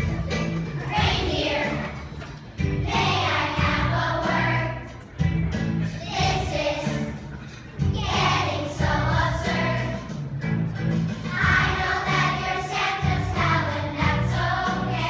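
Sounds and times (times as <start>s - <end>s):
musical accompaniment: 0.0s - 15.0s
children singing together: 0.8s - 2.2s, 2.8s - 5.0s, 6.0s - 10.1s, 11.2s - 15.0s.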